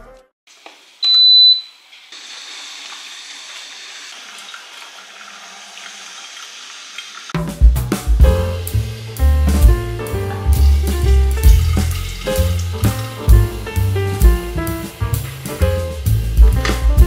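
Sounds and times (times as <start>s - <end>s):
water running: 0.5s - 17.0s
high electronic beep: 1.0s - 1.7s.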